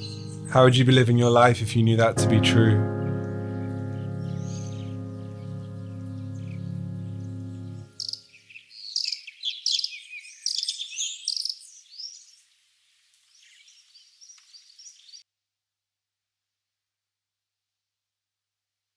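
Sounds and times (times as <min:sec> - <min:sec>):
low ambient music drone: 0:00.0 - 0:08.1
birds chirping and singing: 0:00.0 - 0:12.6, 0:13.2 - 0:15.2.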